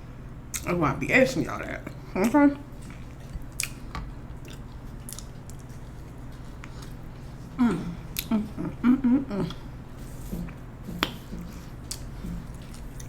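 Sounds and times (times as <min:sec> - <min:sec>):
person chewing food: 0:02.7 - 0:13.0
person humming: 0:07.6 - 0:09.7.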